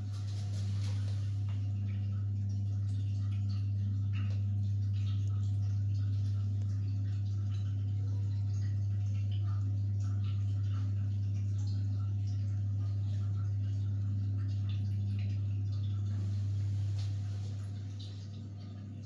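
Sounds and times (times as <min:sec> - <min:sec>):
gas boiler humming: 0:00.0 - 0:19.0.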